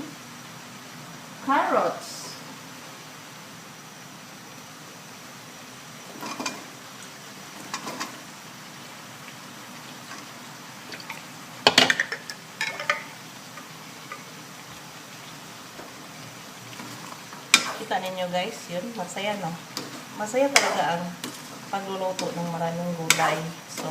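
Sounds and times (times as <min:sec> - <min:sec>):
spoon clinking and scraping wok: 0:11.7 - 0:13.1, 0:17.5 - 0:17.9, 0:19.7 - 0:23.9.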